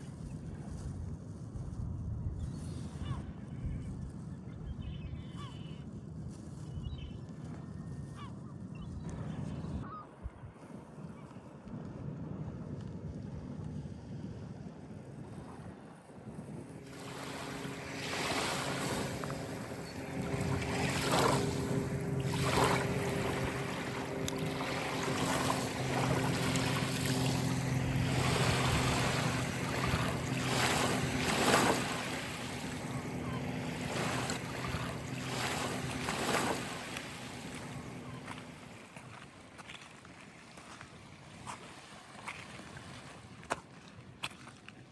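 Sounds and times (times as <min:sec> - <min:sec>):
low motor hum: 0:11.6 - 0:39.4
waves breaking on shore: 0:16.4 - 0:44.6.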